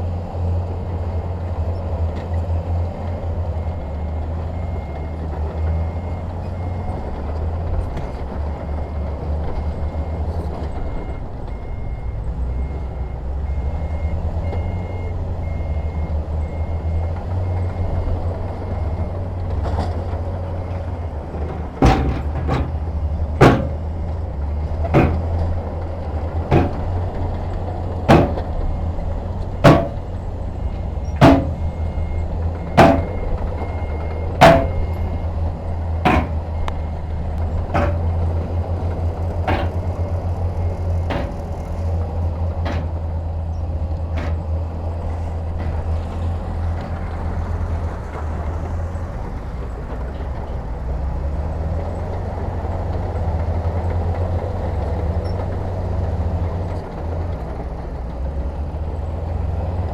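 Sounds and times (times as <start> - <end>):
diesel truck engine running: 0.0 - 59.9
reversing alarm beeping: 8.5 - 19.2, 20.6 - 25.4, 28.1 - 37.2
sharp metallic bangs: 21.5 - 24.0, 24.8 - 25.4, 26.5 - 27.0, 28.1 - 28.9, 29.6 - 30.2, 31.2 - 32.1, 32.7 - 33.4, 34.4 - 35.2, 36.0 - 36.6, 37.6 - 38.3, 39.5 - 40.0, 41.0 - 41.7.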